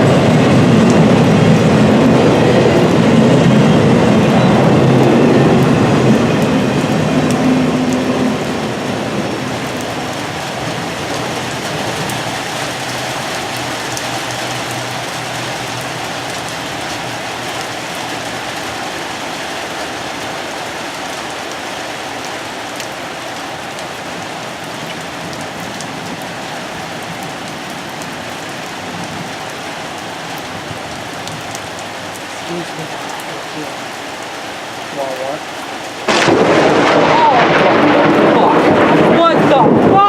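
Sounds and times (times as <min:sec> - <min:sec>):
low rumble: 0:00.0 - 0:12.1
steady rain falling: 0:00.0 - 0:40.0.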